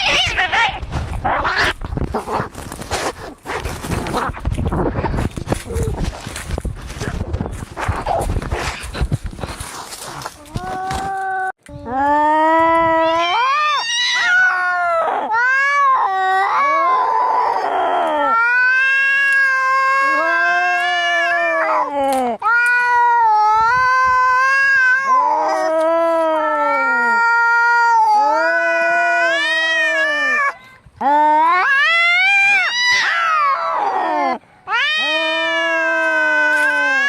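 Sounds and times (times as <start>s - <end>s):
cats yowling: 0.0s - 1.8s, 12.6s - 37.0s
cat hissing: 0.0s - 4.3s.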